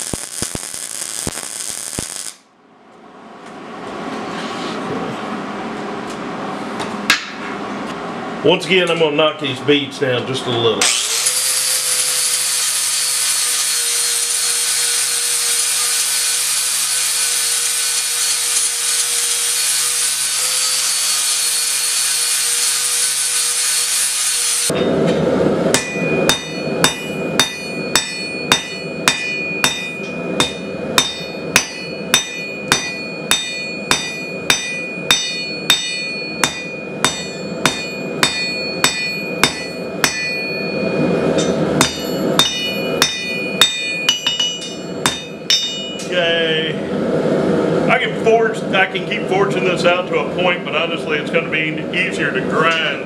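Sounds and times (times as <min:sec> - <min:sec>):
angle grinder grinding steel: 0:10.8 - 0:24.9, 0:25.8 - 0:46.1
hammer blows on anvil: 0:24.7 - 0:46.2.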